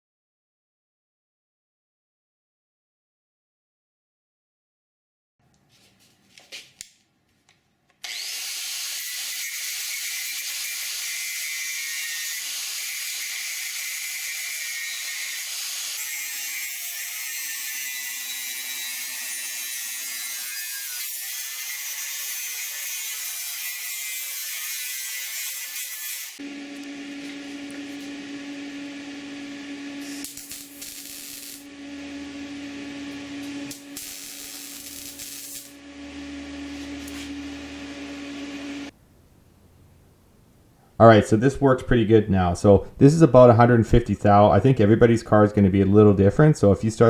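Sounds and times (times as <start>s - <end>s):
power tool cutting steel: 8.0s - 26.5s, 29.8s - 38.9s
low buzzing hum: 26.4s - 40.9s.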